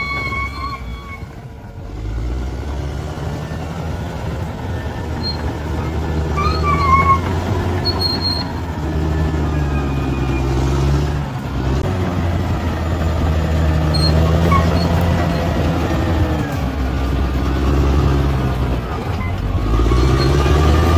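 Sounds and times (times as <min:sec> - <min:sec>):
short high squeaks: 0:00.0 - 0:01.5, 0:04.9 - 0:11.0, 0:13.8 - 0:15.6, 0:19.0 - 0:20.9
bulldozer diesel engine running: 0:00.0 - 0:20.9.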